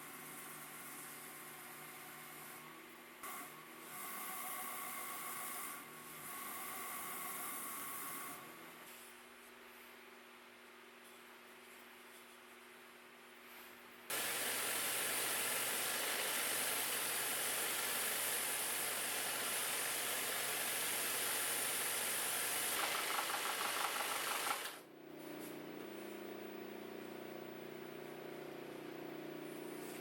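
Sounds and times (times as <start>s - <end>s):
woodworking power tool running: 14.1s - 24.9s.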